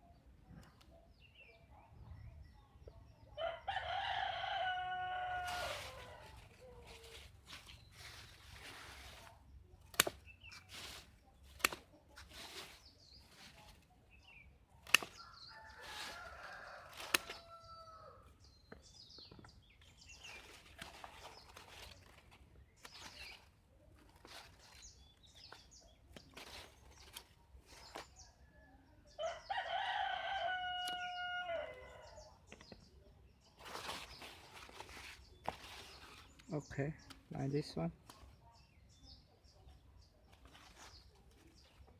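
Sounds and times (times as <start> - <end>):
rooster crowing: 3.4 - 6.4, 29.2 - 32.2.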